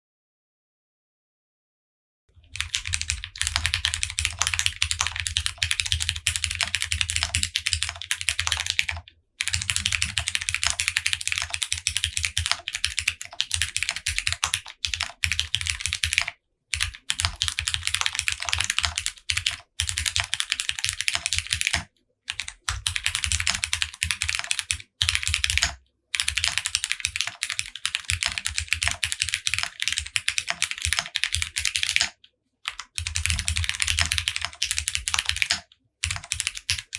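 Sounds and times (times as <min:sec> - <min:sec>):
fast typing on mechanical keyboard: 0:02.4 - 0:36.9.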